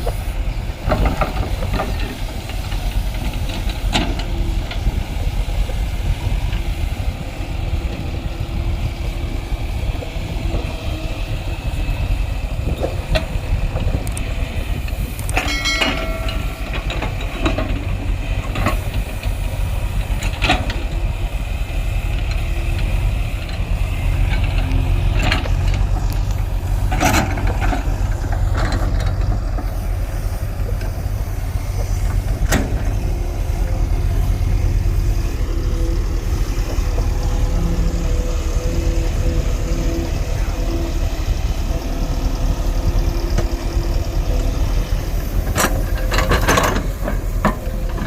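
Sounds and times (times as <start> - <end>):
diesel engine rumbling: 0.0 - 48.0
sharp metallic clanks: 15.2 - 17.9.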